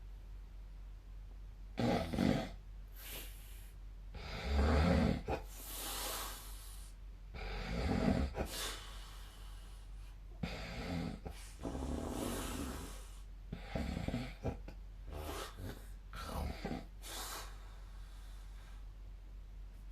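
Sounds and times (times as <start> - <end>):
person snoring: 1.8 - 6.8, 7.4 - 9.0, 10.4 - 17.6.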